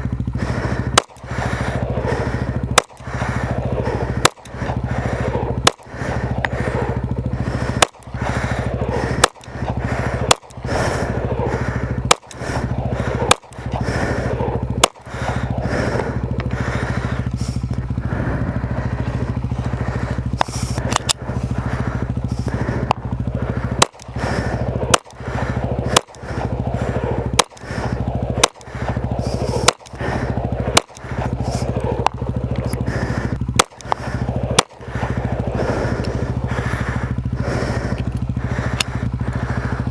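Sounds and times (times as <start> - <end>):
low background hum: 0.0 - 39.9
handgun shots: 1.0 - 1.3, 2.8 - 3.0, 4.2 - 4.6, 5.6 - 5.9, 7.8 - 8.1, 9.2 - 9.6, 10.2 - 10.6, 12.1 - 12.4, 13.3 - 13.6, 14.3 - 15.1, 23.8 - 24.1, 24.9 - 25.2, 26.0 - 26.2, 27.4 - 27.7, 28.4 - 28.7, 29.5 - 30.0, 30.8 - 31.0, 33.6 - 34.0.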